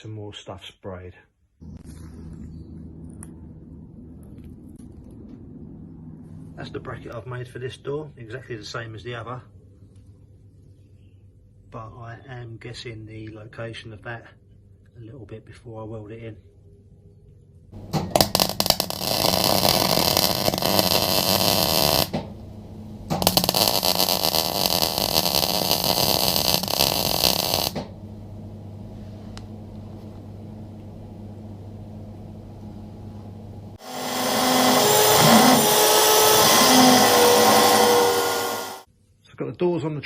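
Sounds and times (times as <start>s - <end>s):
welder crackling: 17.8s - 28.0s, 33.8s - 38.9s
loud steady machine: 17.8s - 38.9s
welder humming: 17.8s - 38.9s.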